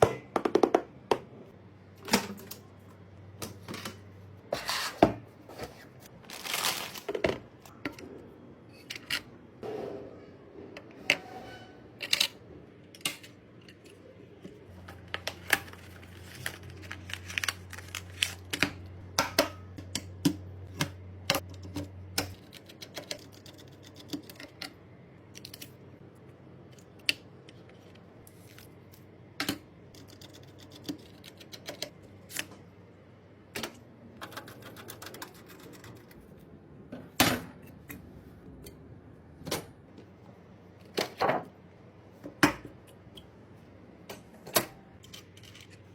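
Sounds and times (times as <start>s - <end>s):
computer parts clicking and tapping: 19.2s - 25.7s, 29.4s - 32.0s.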